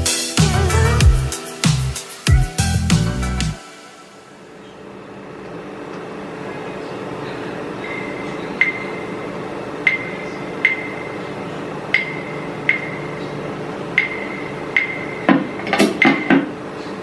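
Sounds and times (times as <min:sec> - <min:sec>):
steady hum: 0:00.0 - 0:17.0
ringing percussive clicks: 0:09.8 - 0:11.1, 0:11.9 - 0:13.1, 0:14.0 - 0:16.5.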